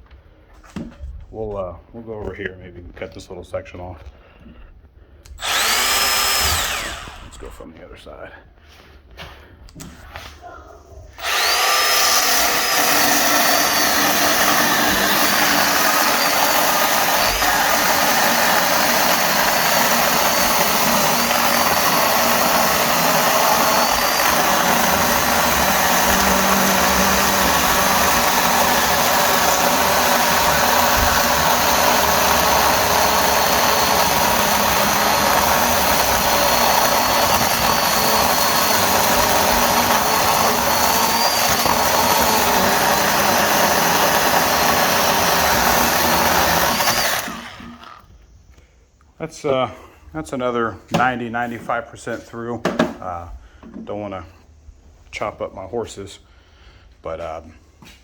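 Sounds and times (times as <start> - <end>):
battery chainsaw cutting log: 5.4 - 7.6, 11.2 - 48.1.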